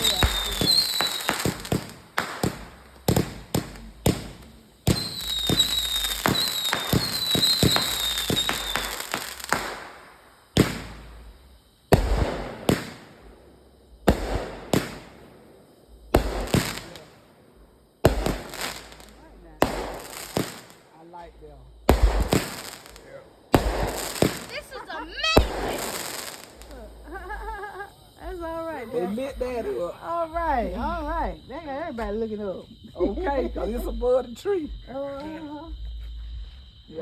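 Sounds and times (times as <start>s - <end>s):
fireworks whistles: 0.0s - 13.4s, 14.0s - 15.5s, 16.1s - 17.3s, 18.0s - 21.2s, 21.8s - 29.9s
fireworks bangs and crackling: 0.0s - 17.4s, 18.0s - 21.2s, 21.8s - 29.8s
loud echoing firework bangs: 0.0s - 20.9s, 21.8s - 26.7s.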